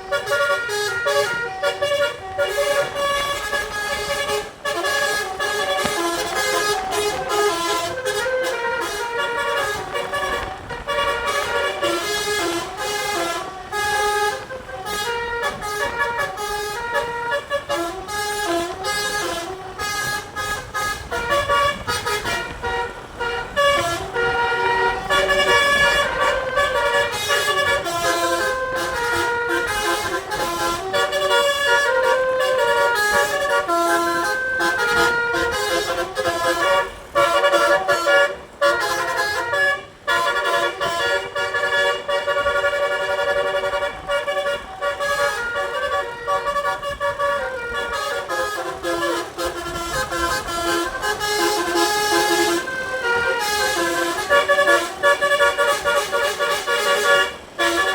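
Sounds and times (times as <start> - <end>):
musical air horn melody: 0.0 - 57.9.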